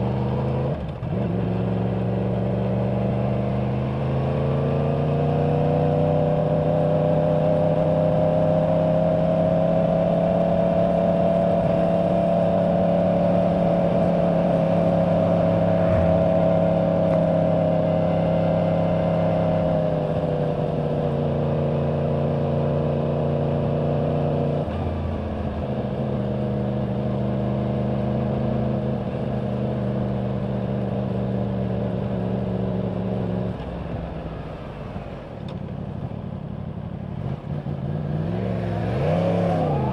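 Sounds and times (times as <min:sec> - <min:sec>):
motorcycle engine at speed: 0:00.0 - 0:39.9
wind rushing: 0:13.2 - 0:18.2.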